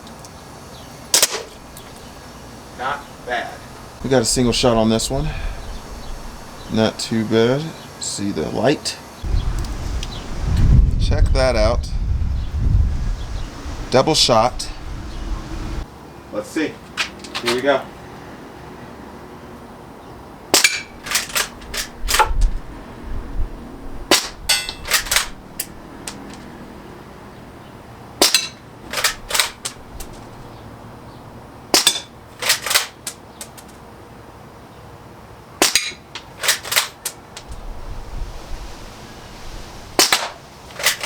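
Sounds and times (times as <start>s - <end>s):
air rifle shots: 1.1s - 1.6s, 20.5s - 22.6s, 24.1s - 26.5s, 28.2s - 30.5s, 31.7s - 33.1s, 35.6s - 37.2s, 39.9s - 41.0s
quick rifle clicks: 20.6s - 22.5s, 24.1s - 26.4s, 28.2s - 30.3s, 31.7s - 33.8s, 35.6s - 37.6s, 40.0s - 41.0s.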